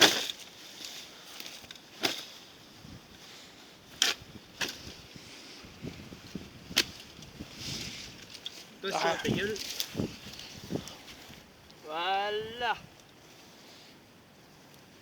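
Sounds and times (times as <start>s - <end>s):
faint steady hiss: 0.0s - 15.0s
campfire cracks: 6.0s - 11.8s.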